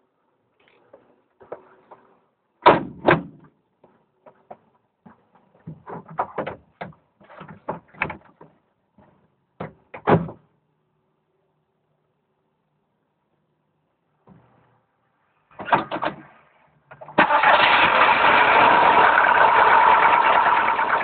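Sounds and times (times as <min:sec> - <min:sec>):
knocks and clunks: 0:01.4 - 0:10.4, 0:15.5 - 0:17.2.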